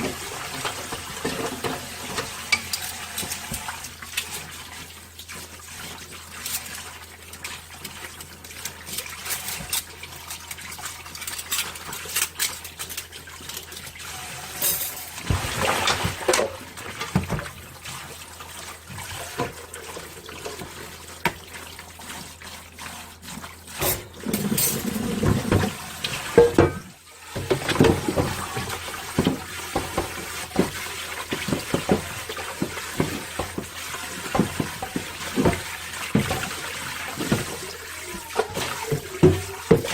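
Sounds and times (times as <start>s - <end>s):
tap water running: 0.0s - 39.9s
water splashing: 13.9s - 39.9s
dishes clinking: 23.8s - 28.4s.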